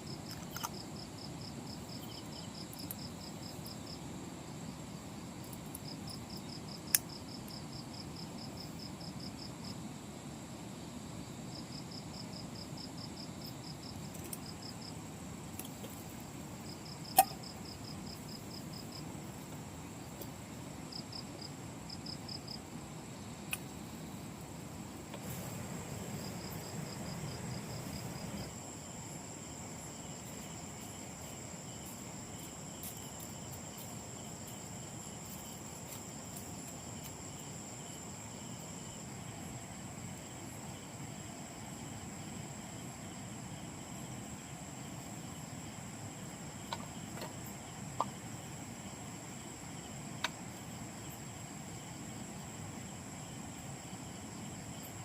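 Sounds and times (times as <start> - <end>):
crickets pulsing: 0.0 - 55.0
high-pitched insect whine: 0.0 - 55.0
sharp snaps: 23.5 - 23.7.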